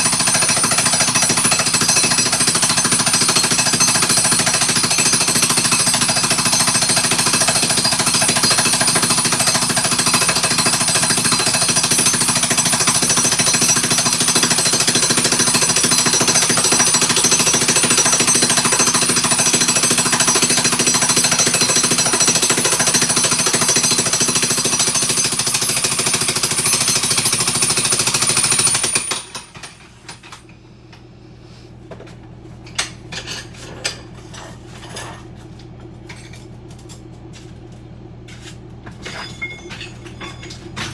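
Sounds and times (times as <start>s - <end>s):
jackhammer breaking tile: 0.0s - 30.4s, 39.0s - 40.9s
clinks: 38.9s - 40.9s.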